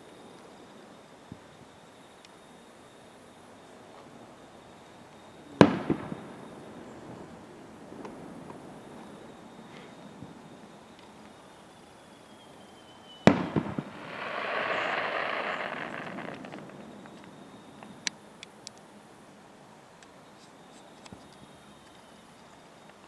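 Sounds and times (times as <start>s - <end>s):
crackling hiss: 0.0s - 23.0s
firework bang echoing: 5.6s - 6.6s, 13.3s - 18.0s
firework whistle rising: 11.2s - 18.0s
small pops: 13.3s - 18.8s.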